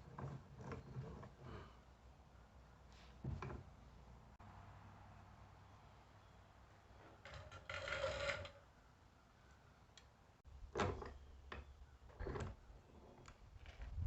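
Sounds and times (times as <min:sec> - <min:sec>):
rustle: 0:02.8 - 0:10.6
scraping clatters: 0:07.0 - 0:08.7.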